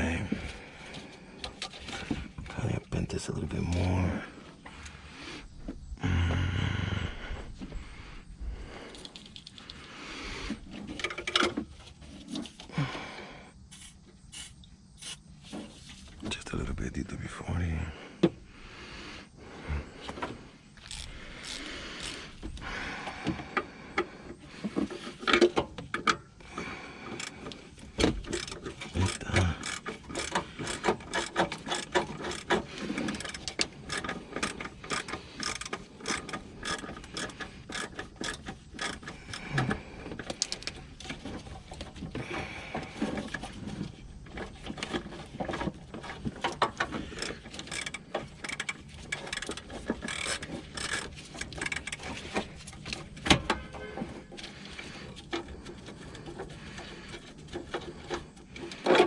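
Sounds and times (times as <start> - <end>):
socket ratchet clicking: 28.2 - 39.4.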